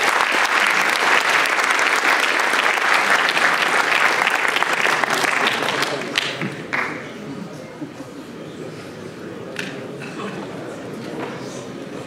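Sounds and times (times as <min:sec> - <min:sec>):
audience applauding: 0:00.0 - 0:07.1.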